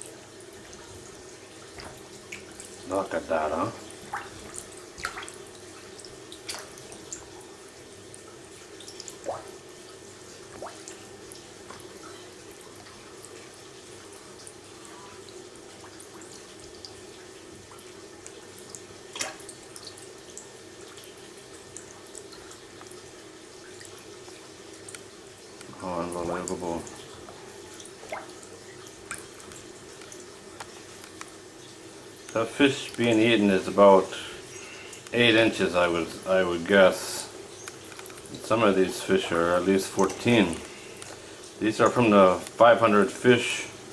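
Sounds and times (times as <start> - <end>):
water drips: 0.0 - 43.9
water trickling in a tank: 0.0 - 43.9.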